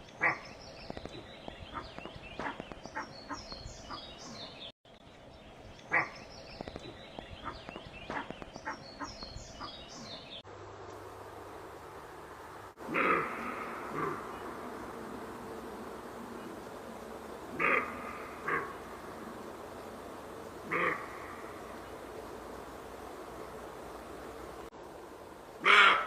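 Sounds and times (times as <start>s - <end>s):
faint clicks: 0.0s - 4.0s, 4.9s - 9.3s, 10.8s - 11.0s
small birds chirping: 0.0s - 10.5s, 12.7s - 24.7s
deer barking: 12.9s - 14.4s, 17.5s - 18.8s, 20.7s - 21.1s, 25.6s - 26.0s.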